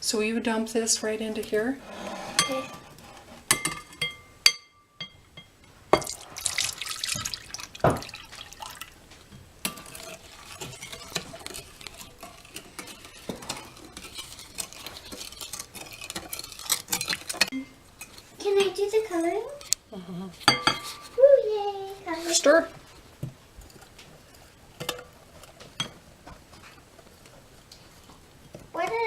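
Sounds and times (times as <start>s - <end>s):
spoon scraping and knocking bowl: 1.4s - 6.2s, 9.6s - 18.2s, 20.4s - 21.2s
liquid pouring into bowl: 6.0s - 9.0s.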